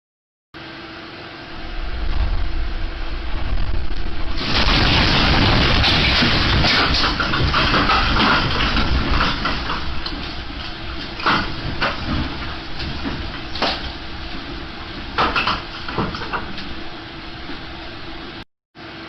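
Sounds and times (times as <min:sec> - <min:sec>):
earthquake rumble: 0:01.5 - 0:18.2
objects knocking together: 0:03.6 - 0:16.7
household objects rattling: 0:03.7 - 0:16.4.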